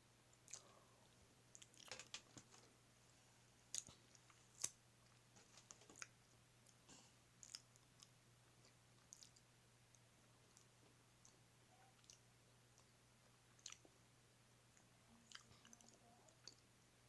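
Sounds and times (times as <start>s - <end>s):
low steady hum: 0.0s - 17.0s
person chewing: 0.4s - 0.9s, 3.7s - 6.8s, 7.4s - 11.4s, 12.0s - 13.9s, 14.7s - 16.7s
wet mouth clicks and lip smacks: 9.0s - 9.5s.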